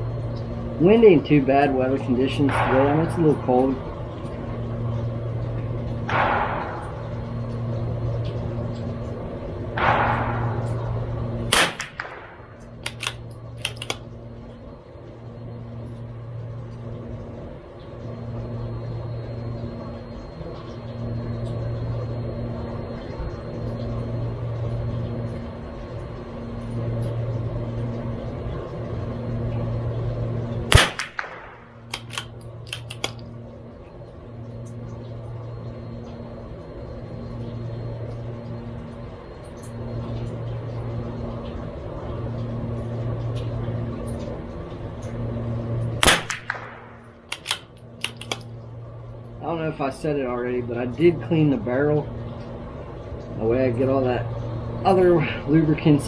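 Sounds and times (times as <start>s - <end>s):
low hum: 0.0s - 56.0s
rifle shots: 11.5s - 14.0s, 30.7s - 33.1s, 46.0s - 48.4s
rifle bolt clicks: 12.8s - 14.0s, 31.9s - 33.2s, 47.3s - 48.5s.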